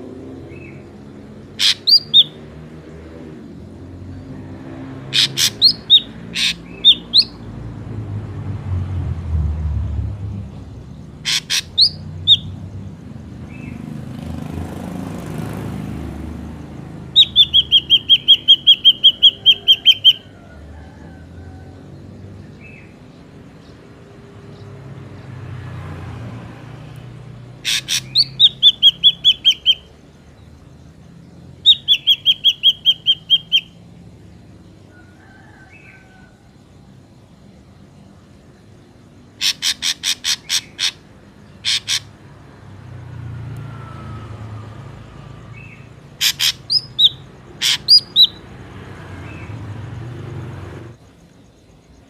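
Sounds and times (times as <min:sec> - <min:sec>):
bird rapid repeated high notes: 0:17.2 - 0:20.2
bird whistled notes: 0:17.2 - 0:20.2, 0:31.7 - 0:33.8, 0:46.2 - 0:48.4.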